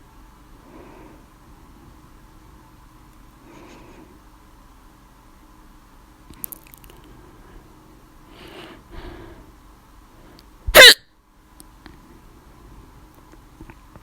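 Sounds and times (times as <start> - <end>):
faint breathy sounds: 0.6 - 2.2, 3.3 - 4.4, 7.0 - 10.6
person hiccuping: 10.7 - 11.0.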